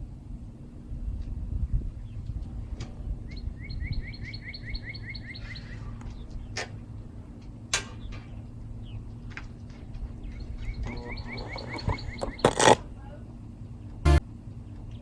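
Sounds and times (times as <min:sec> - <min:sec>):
bird trilling: 0:10.7 - 0:12.6.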